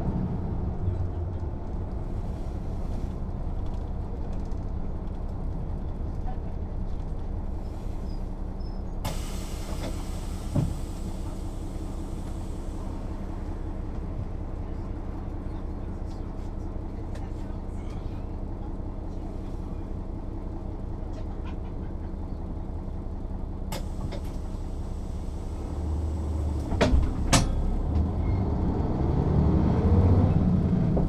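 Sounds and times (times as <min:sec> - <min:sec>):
bus diesel engine: 0:00.0 - 0:31.0
road noise: 0:00.0 - 0:31.0
thump: 0:10.5 - 0:10.8, 0:26.6 - 0:27.6.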